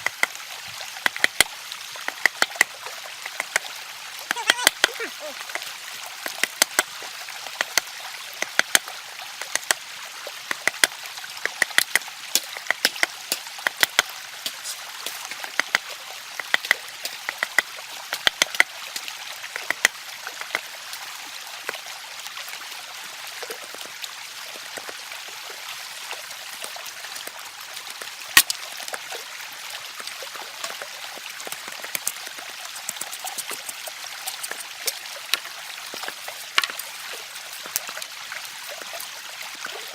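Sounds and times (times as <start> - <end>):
stream trickling: 0.0 - 39.9
sharp clicks and taps: 1.0 - 3.7, 10.5 - 15.8, 16.4 - 18.7, 19.6 - 20.6, 30.6 - 36.9.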